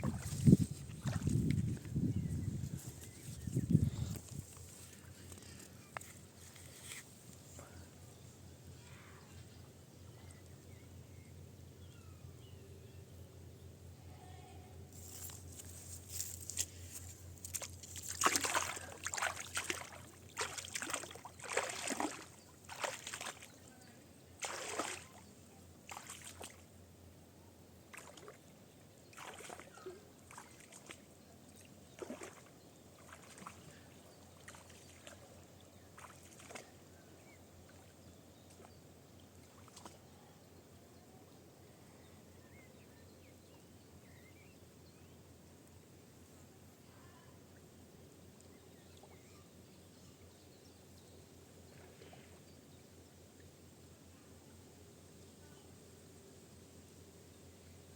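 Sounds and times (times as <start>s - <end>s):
water splashing and sloshing: 0.0s - 1.9s, 15.0s - 23.7s, 24.4s - 25.2s, 25.8s - 26.7s, 27.9s - 28.5s, 29.1s - 36.8s, 39.3s - 40.0s.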